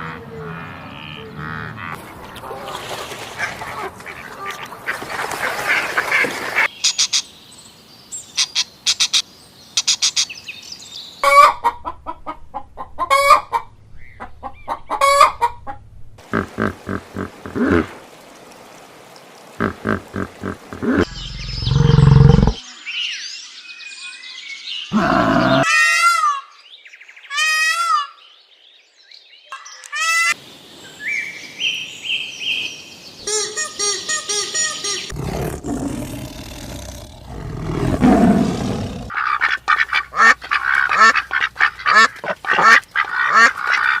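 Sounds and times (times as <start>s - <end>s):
animal calls: 16.2s - 18.0s, 19.6s - 22.6s, 24.9s - 26.4s, 34.8s - 44.0s
bird calls: 19.6s - 22.6s.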